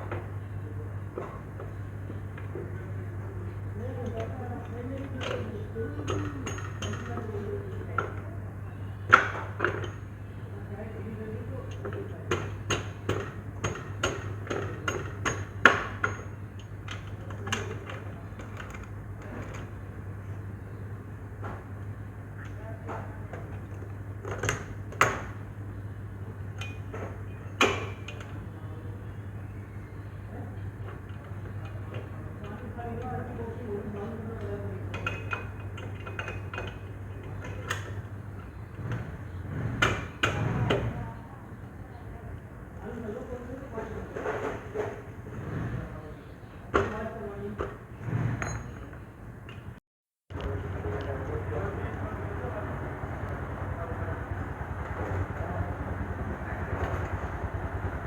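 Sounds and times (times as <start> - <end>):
steady low hum: 49.0 - 58.0.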